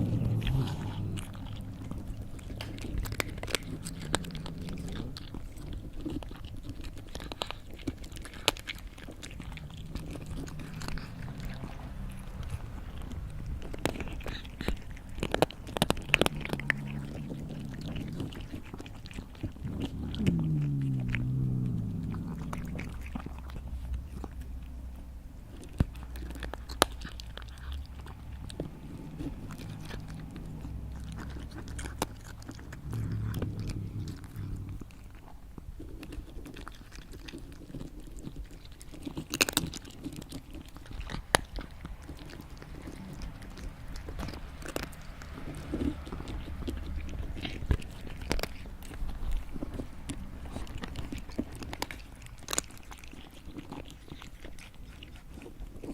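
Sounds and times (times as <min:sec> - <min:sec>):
low drone: 0:00.0 - 0:03.6
cat chewing and crunching: 0:00.0 - 0:55.9.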